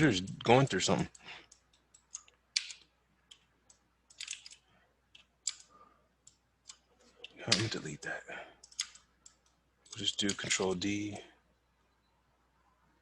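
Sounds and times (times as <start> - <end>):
mouse and keyboard clicks: 1.5 - 7.8, 8.6 - 10.7.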